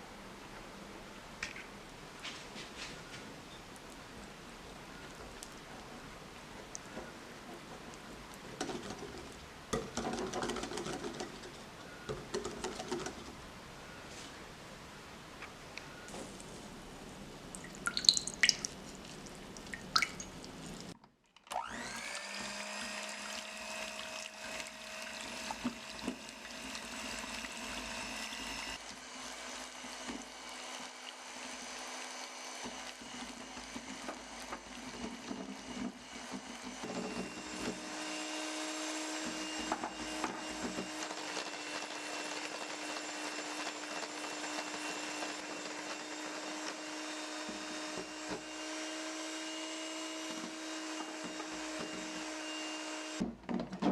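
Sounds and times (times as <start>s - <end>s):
electric mixer running: 21.5s - 53.3s.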